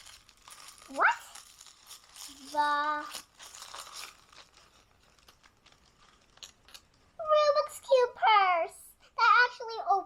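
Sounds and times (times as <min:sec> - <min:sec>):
plastic packaging crinkling and tearing: 0:00.0 - 0:07.5
child's voice holding a note: 0:00.9 - 0:01.4, 0:02.3 - 0:03.2, 0:07.2 - 0:10.0.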